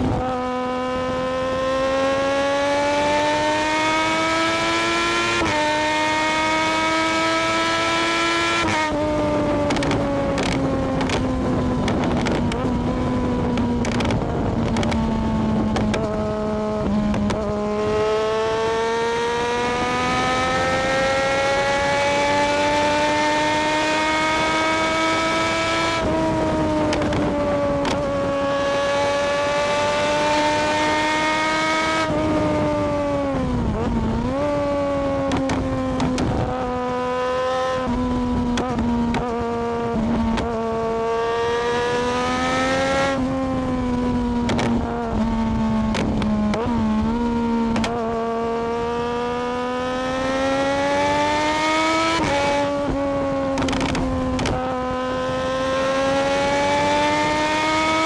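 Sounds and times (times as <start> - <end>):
motorcycle engine running: 8.9 - 41.7.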